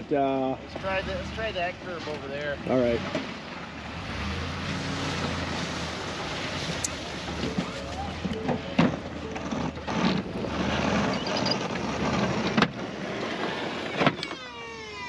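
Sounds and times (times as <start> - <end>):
truck engine running: 0.0 - 15.0.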